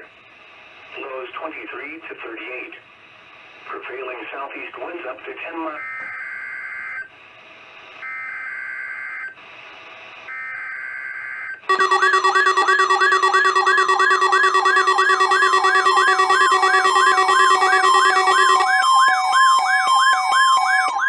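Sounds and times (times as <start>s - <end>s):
digital data tone bursts: 11.7s - 19.5s
warbling alert tone: 11.7s - 21.0s.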